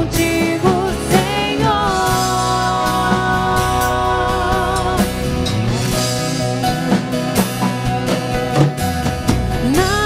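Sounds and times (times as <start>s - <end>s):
person singing: 0.0s - 5.8s, 9.6s - 10.0s
drum kit: 0.0s - 10.0s
guitar playing: 0.0s - 10.0s
worship band music: 0.0s - 10.0s.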